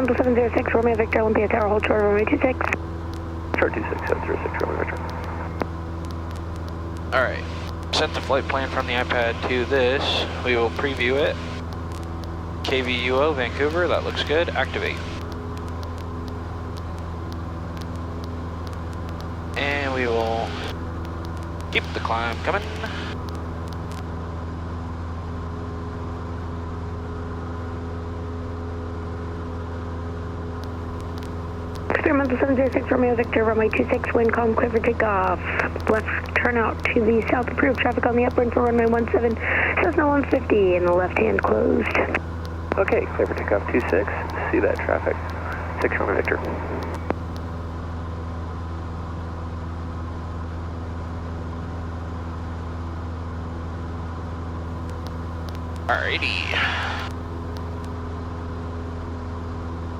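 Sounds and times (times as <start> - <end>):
propeller plane engine droning: 0.0 - 59.9.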